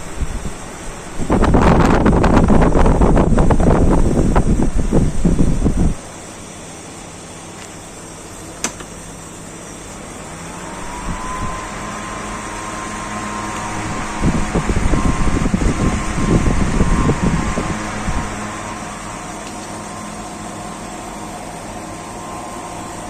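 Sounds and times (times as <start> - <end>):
fan motor whine: 0.0 - 23.0
fan wind buffeting microphone: 0.0 - 23.0
fan switch click: 8.6 - 9.0, 19.4 - 20.3.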